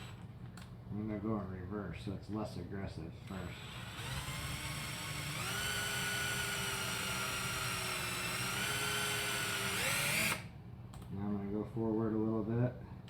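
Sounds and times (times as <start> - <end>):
power drill rubbing on wood: 3.2 - 10.4.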